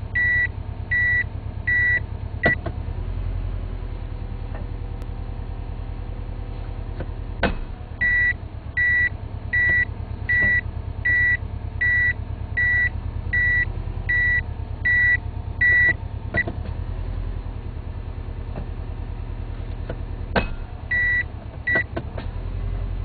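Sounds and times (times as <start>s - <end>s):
car engine idling: 0.0s - 23.0s
reverse warning beeps: 0.2s - 2.6s, 8.0s - 16.5s, 20.9s - 21.9s
transmission metallic clunk: 19.8s - 20.8s.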